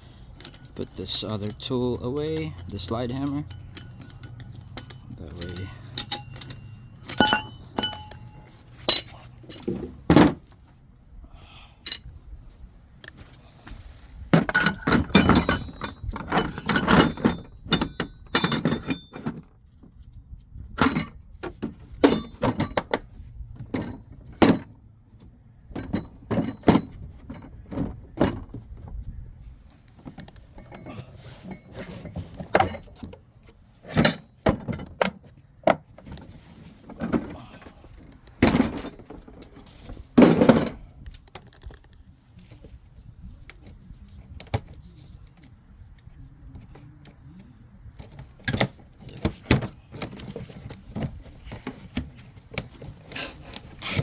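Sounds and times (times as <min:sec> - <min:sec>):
steel tools clinking and clanking: 0:00.3 - 0:10.0, 0:11.8 - 0:12.1, 0:14.4 - 0:19.4, 0:22.0 - 0:23.0, 0:33.8 - 0:35.0, 0:38.4 - 0:39.5, 0:40.2 - 0:40.9.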